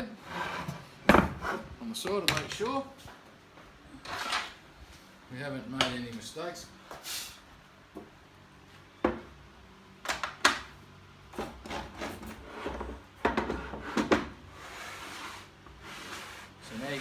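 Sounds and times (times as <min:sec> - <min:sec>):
wood rubbing and scraping: 0:11.4 - 0:17.0.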